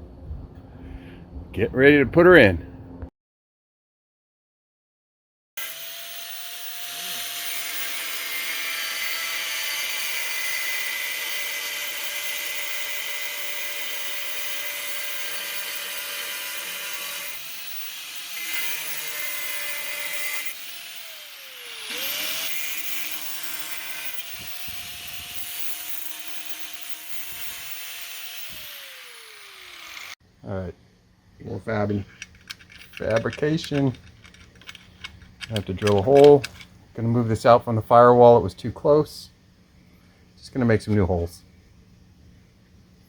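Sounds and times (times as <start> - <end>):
power tool motor whining: 5.6 - 30.2.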